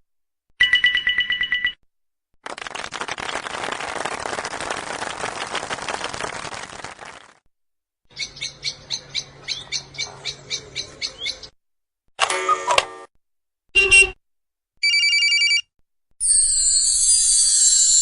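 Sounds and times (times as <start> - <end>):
bird chirping quickly: 8.1 - 11.5.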